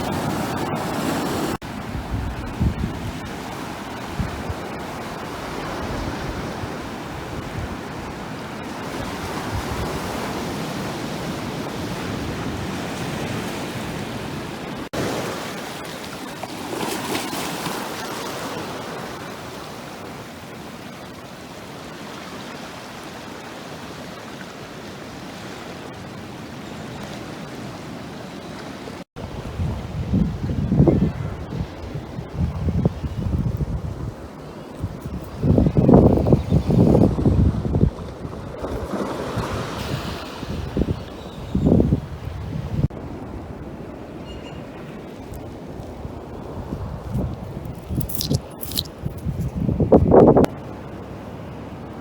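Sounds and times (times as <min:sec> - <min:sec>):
wind buffeting microphone: 0:00.0 - 0:15.2, 0:29.2 - 0:51.0
surf washing onto beach: 0:00.0 - 0:30.7, 0:31.4 - 0:47.9.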